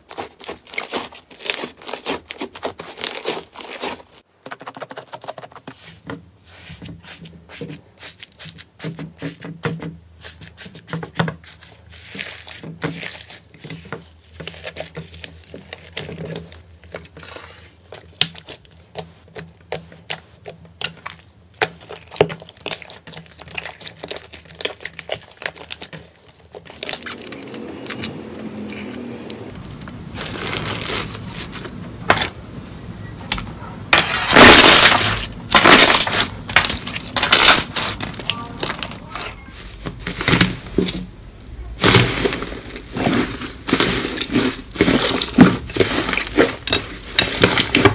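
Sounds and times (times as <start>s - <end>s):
slime squishing and crunching: 0.0s - 9.4s, 10.0s - 27.3s, 29.5s - 32.2s, 33.9s - 47.9s.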